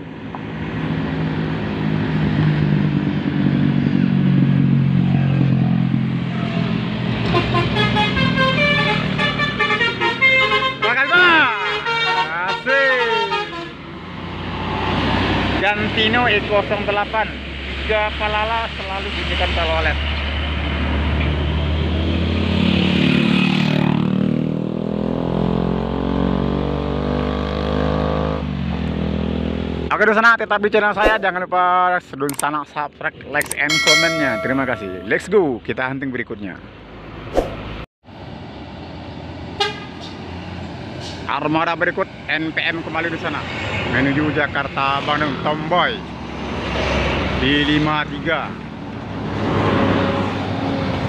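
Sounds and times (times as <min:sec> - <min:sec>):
bus diesel engine passing: 0:00.1 - 0:12.4, 0:13.1 - 0:24.2, 0:36.8 - 0:51.0
bus engine running: 0:03.7 - 0:10.8
bus horn playing melody: 0:07.2 - 0:13.8, 0:39.6 - 0:40.0.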